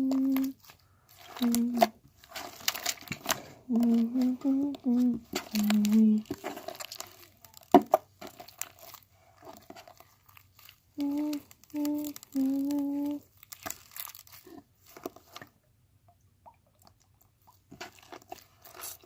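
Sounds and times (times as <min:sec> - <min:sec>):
person humming: 0:00.0 - 0:00.6, 0:01.3 - 0:02.0, 0:03.7 - 0:06.4, 0:11.0 - 0:13.3
slime squishing and crackling: 0:00.0 - 0:15.4, 0:17.6 - 0:19.0.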